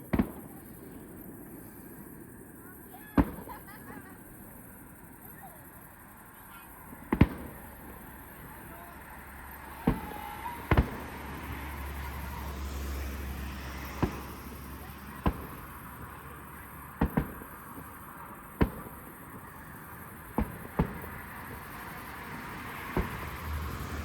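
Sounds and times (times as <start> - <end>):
fireworks bursting: 0.0 - 24.0.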